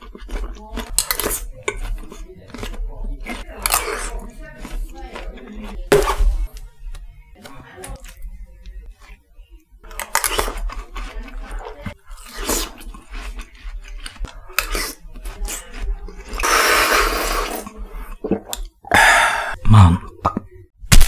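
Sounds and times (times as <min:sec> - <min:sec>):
chewing and biting: 0:00.0 - 0:07.0, 0:09.9 - 0:16.6.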